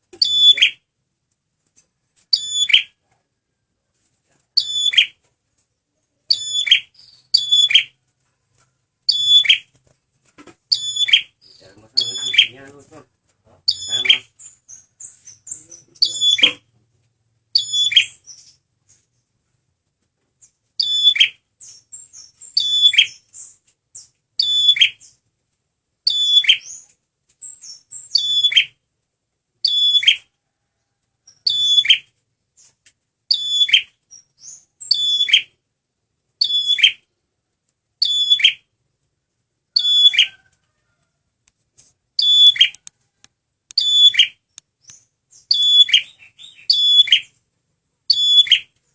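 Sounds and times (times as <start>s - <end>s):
songbird singing high call: 0.2s - 0.8s, 2.3s - 3.0s, 4.6s - 5.2s, 6.3s - 8.0s, 9.1s - 9.7s, 10.7s - 12.6s, 13.7s - 16.6s, 17.6s - 18.6s, 20.8s - 25.2s, 26.0s - 28.8s, 29.6s - 30.3s, 31.3s - 32.1s, 33.3s - 35.6s, 36.4s - 37.1s, 38.0s - 38.6s, 42.2s - 42.8s, 43.8s - 47.4s, 48.1s - 48.7s.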